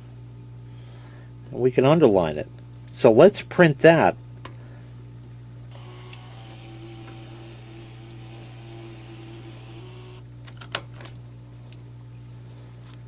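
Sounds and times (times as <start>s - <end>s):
label printer motor whirring: 5.7s - 10.2s.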